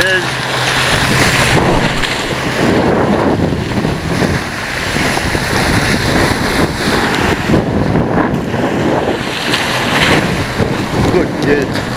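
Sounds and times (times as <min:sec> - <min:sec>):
water rushing past hulls: 0:00.0 - 0:11.9
wind buffeting microphone: 0:00.0 - 0:11.9.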